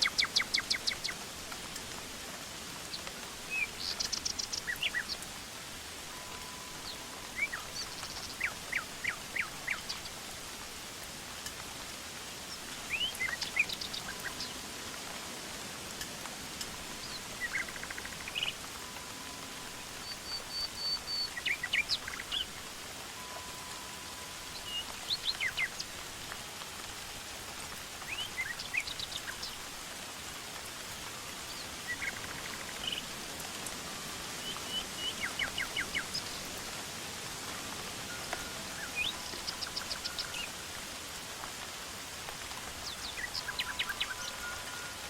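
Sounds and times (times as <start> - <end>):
songbirds chirping and trilling: 0.0 - 2.0, 2.7 - 10.5, 11.4 - 26.6, 27.6 - 29.8, 30.8 - 40.6, 42.4 - 45.0
forest ambience hiss: 0.0 - 45.0.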